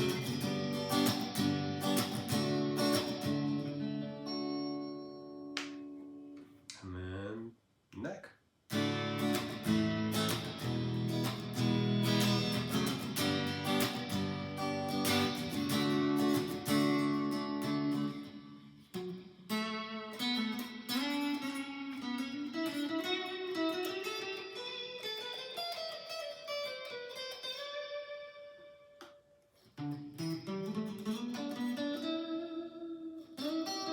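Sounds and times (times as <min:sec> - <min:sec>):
electric guitar single-note line: 0:00.0 - 0:06.4, 0:08.7 - 0:28.7
electric guitar strummed chords: 0:00.0 - 0:06.4, 0:08.7 - 0:28.6, 0:29.8 - 0:33.9.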